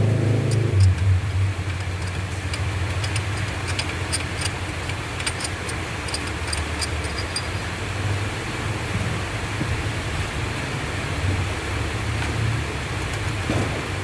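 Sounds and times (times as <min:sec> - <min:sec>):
car engine idling: 0:00.0 - 0:09.5
sharp clicks: 0:00.4 - 0:07.6.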